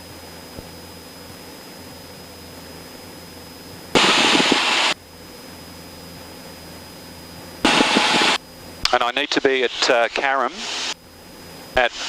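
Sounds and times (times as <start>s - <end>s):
aircraft engine drone: 0.0s - 12.0s
burst of rushing noise: 4.0s - 5.0s, 7.7s - 8.4s.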